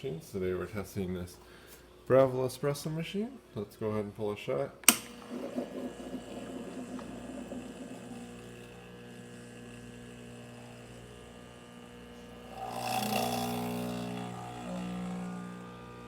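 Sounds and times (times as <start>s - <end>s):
espresso machine pump humming: 4.9s - 16.0s.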